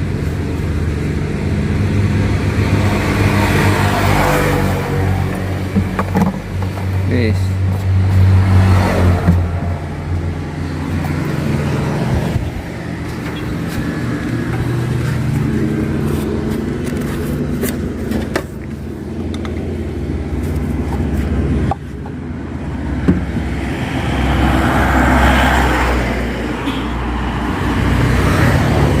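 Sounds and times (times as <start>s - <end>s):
road traffic: 0.0s - 29.0s
vehicle engine running: 0.0s - 29.0s.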